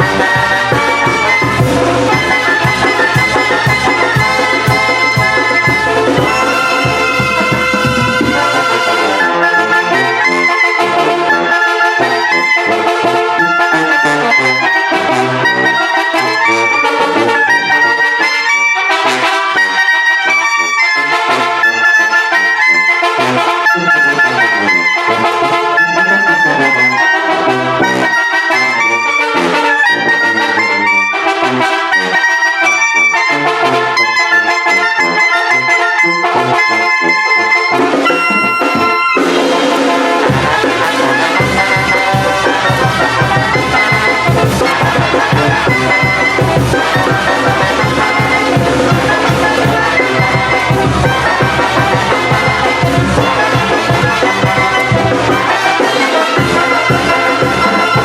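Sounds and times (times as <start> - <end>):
steady percussion beat: 0.0 - 9.4, 37.7 - 58.0
trumpets and trombones: 0.0 - 58.0.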